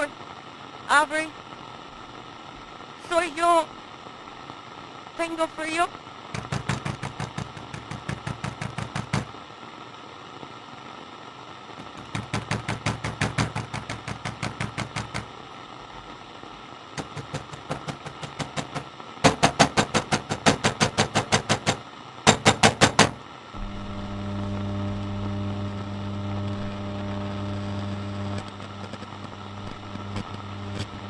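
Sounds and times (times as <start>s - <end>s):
rapid banging on a door: 6.4s - 9.4s, 11.8s - 16.2s, 17.0s - 23.2s.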